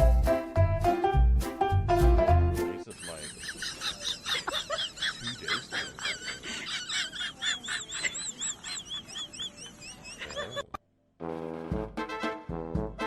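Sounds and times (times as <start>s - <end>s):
small birds peeping: 3.0s - 10.7s
clear arched bird peeps: 7.6s - 10.7s.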